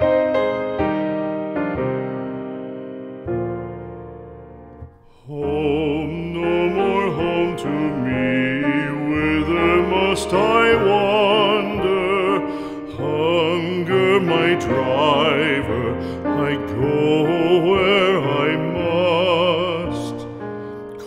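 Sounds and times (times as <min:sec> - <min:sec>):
slow piano song: 0:00.0 - 0:21.0
person singing with vibrato: 0:05.0 - 0:21.0.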